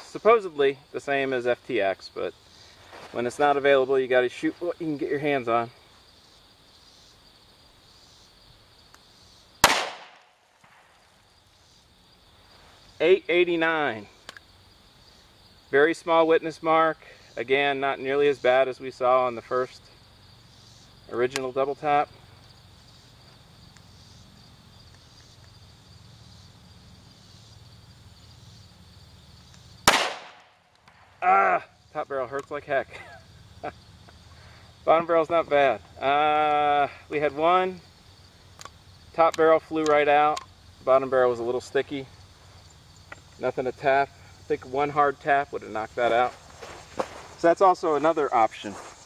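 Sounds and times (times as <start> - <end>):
insects chirping: 0.0 - 49.0
pistol shot with echo: 9.6 - 10.9, 29.8 - 30.5.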